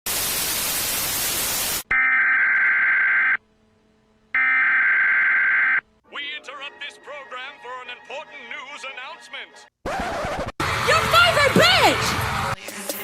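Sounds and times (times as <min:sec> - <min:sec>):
static hiss: 0:00.1 - 0:01.8
buzzy electronic tones: 0:04.4 - 0:05.8.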